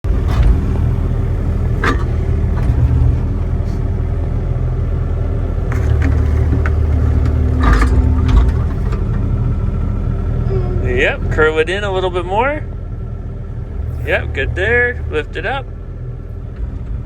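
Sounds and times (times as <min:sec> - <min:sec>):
diesel engine running: 0:00.0 - 0:17.0
short metal clanks: 0:01.8 - 0:02.8, 0:05.7 - 0:09.2.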